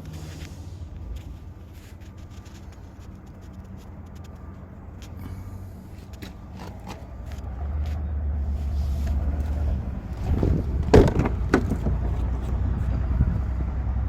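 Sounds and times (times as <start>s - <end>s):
motor vehicle engine rumble: 0.0s - 14.0s
sharp knocks: 10.8s - 12.0s.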